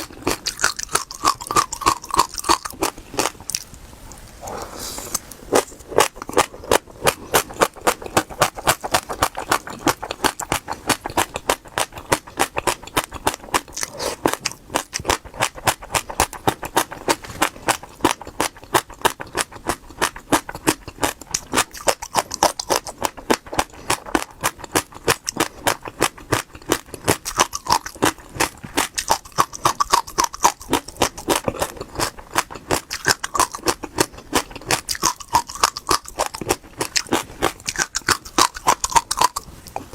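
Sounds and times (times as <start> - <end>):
seeds being chewed: 0.0 - 39.9.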